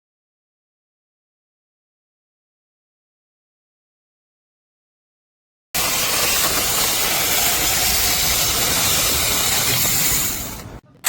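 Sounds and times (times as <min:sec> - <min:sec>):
mini chainsaw running: 0:05.8 - 0:10.7.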